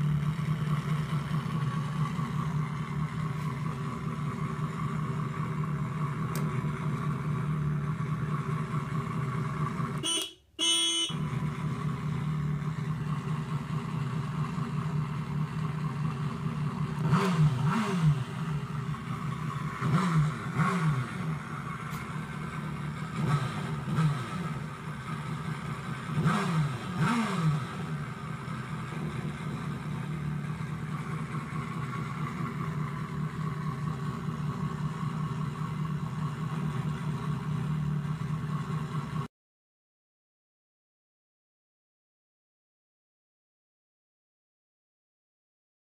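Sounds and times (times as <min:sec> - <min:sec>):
motorcycle engine revving: 0:00.0 - 0:39.3.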